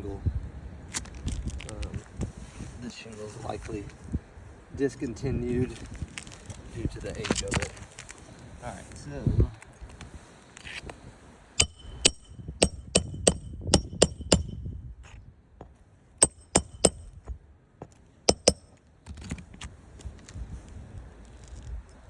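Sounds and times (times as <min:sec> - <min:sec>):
hammer striking roofing nails: 0:11.6 - 0:14.6, 0:16.2 - 0:17.2, 0:17.8 - 0:19.3.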